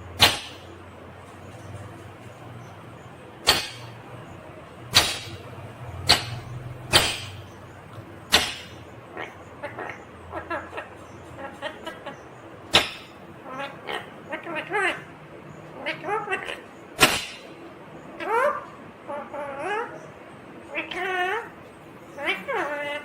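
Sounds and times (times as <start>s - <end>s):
parrot chattering: 2.6s - 15.1s, 15.7s - 23.0s
parrot shrieking: 8.4s - 12.2s, 15.8s - 17.4s, 18.2s - 20.0s, 20.7s - 21.6s, 22.2s - 23.0s.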